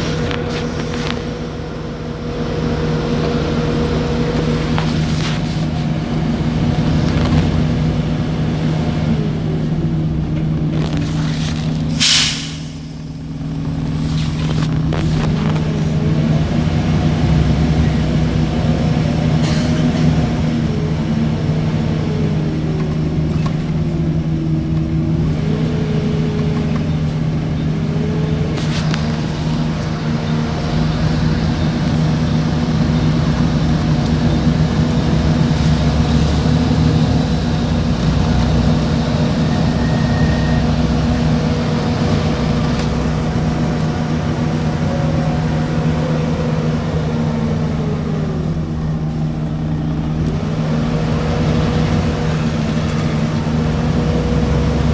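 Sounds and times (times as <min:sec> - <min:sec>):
vehicle engine hum: 0:00.0 - 0:54.9
short hiss: 0:11.1 - 0:13.1.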